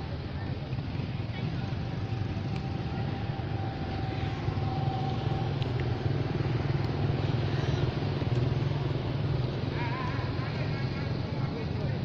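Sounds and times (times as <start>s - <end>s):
engine humming steadily: 0.0s - 12.0s
high-pitched wavering squeal: 1.6s - 7.7s.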